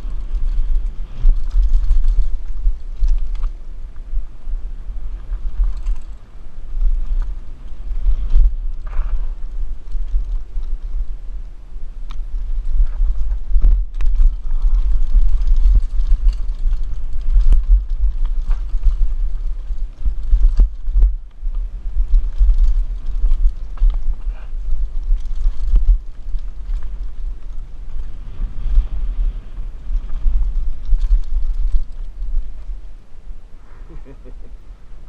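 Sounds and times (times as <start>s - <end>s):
bike clattering over bumps: 0.0s - 3.6s, 12.1s - 29.1s
wind buffeting microphone: 0.0s - 35.0s.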